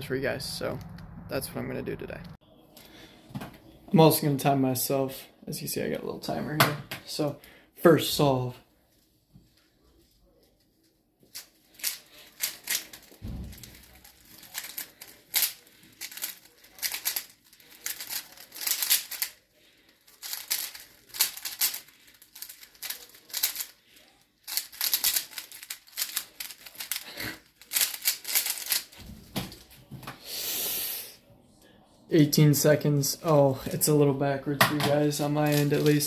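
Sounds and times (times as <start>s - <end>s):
puzzle cube clacking: 11.8s - 19.4s, 20.1s - 23.8s, 24.4s - 29.0s.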